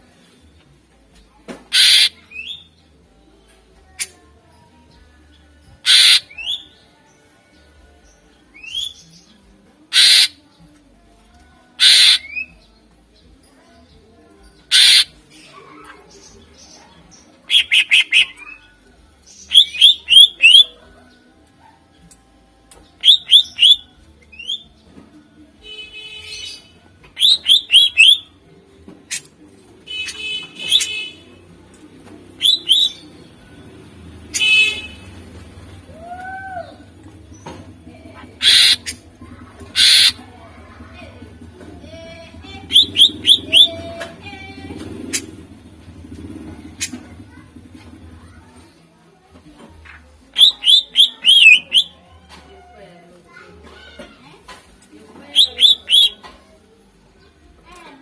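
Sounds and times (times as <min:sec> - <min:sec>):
harsh bird calls: 0:01.7 - 0:02.7, 0:05.8 - 0:06.7, 0:09.9 - 0:10.4, 0:11.8 - 0:12.6, 0:14.6 - 0:16.7, 0:17.5 - 0:18.6, 0:19.3 - 0:20.8, 0:23.0 - 0:24.6, 0:25.6 - 0:28.4, 0:29.9 - 0:31.2, 0:32.4 - 0:33.2, 0:38.3 - 0:40.2, 0:42.6 - 0:43.9, 0:50.3 - 0:52.0, 0:55.3 - 0:56.3
songbird singing: 0:01.7 - 0:21.4, 0:22.0 - 0:40.2, 0:41.9 - 0:45.6, 0:49.8 - 0:52.1, 0:55.1 - 0:56.4
buzzy rattling bird phrases: 0:14.6 - 0:18.6, 0:38.1 - 0:45.4, 0:49.8 - 0:51.9, 0:55.1 - 0:58.0.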